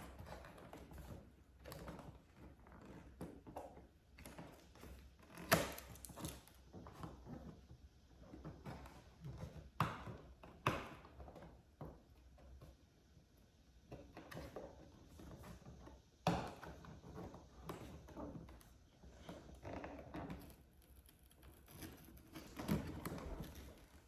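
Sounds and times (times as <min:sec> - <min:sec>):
packing tape being pulled: 0:04.5 - 0:06.6.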